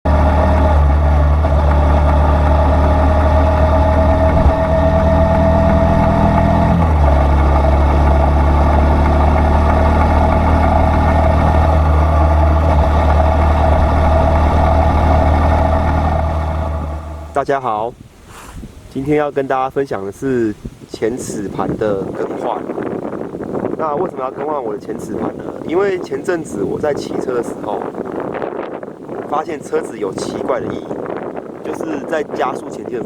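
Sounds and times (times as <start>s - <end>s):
motorcycle engine running: 0.0s - 17.4s.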